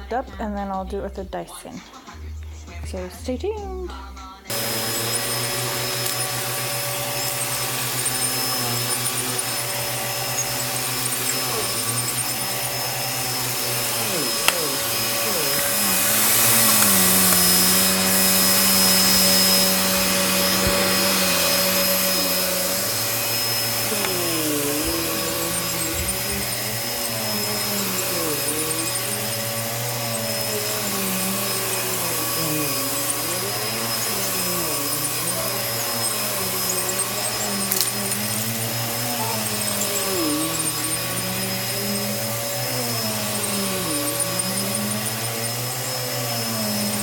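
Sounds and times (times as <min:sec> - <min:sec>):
vacuum cleaner running on a rug: 0:04.5 - 0:47.0.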